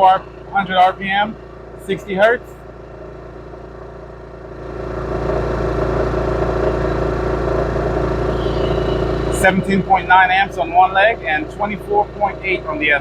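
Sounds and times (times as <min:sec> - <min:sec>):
generator engine running: 0:00.0 - 0:13.0.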